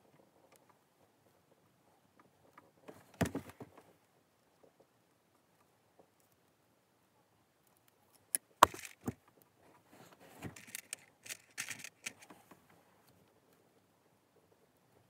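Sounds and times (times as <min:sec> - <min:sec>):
rattling and rustling of wire: 0:08.1 - 0:13.2
sharp click and knock: 0:08.2 - 0:09.2, 0:10.4 - 0:12.4.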